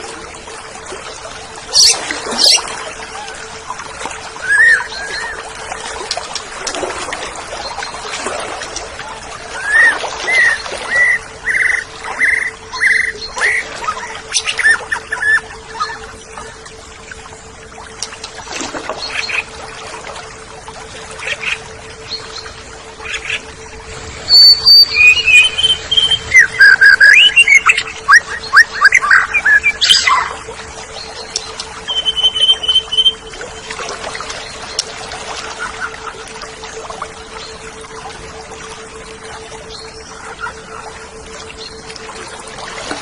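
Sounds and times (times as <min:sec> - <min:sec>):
steady low hum: 0:00.0 - 0:43.0
bird singing whistles and trills: 0:01.7 - 0:02.6, 0:04.4 - 0:05.4, 0:09.6 - 0:16.0, 0:24.2 - 0:30.3, 0:31.0 - 0:33.3.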